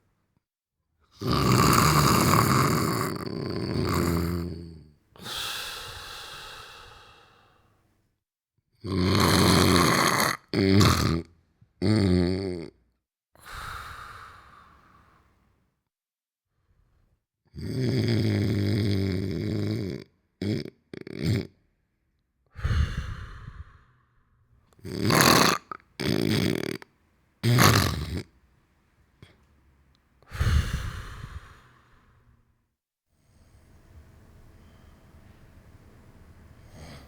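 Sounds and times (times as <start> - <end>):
person snoring loudly: 1.2 - 7.4, 8.8 - 12.8, 17.6 - 21.5, 24.8 - 28.3, 30.3 - 32.1, 36.6 - 37.0
airy breath: 5.2 - 7.8, 13.4 - 15.4, 22.6 - 24.2, 30.2 - 32.4
short snorts: 24.8 - 26.8, 27.4 - 28.3.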